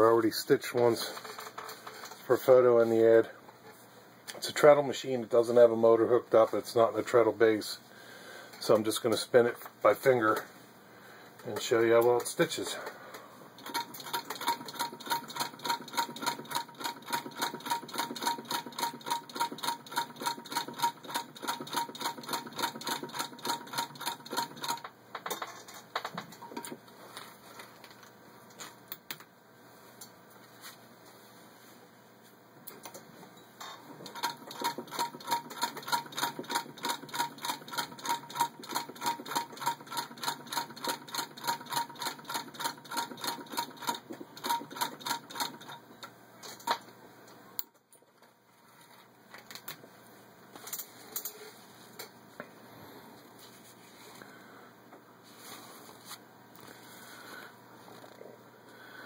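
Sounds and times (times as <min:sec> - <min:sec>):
sewing machine clicking: 0:13.6 - 0:24.9, 0:34.0 - 0:45.8.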